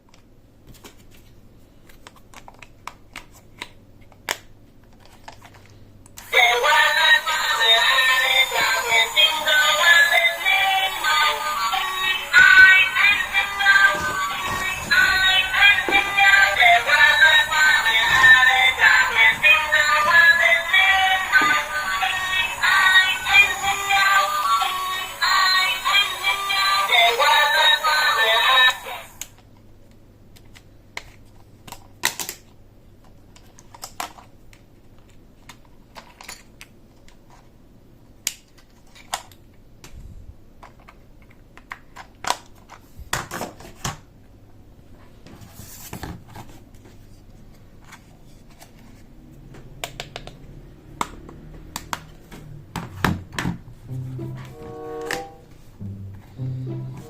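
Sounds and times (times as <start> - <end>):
background music: 53.6 - 57.0.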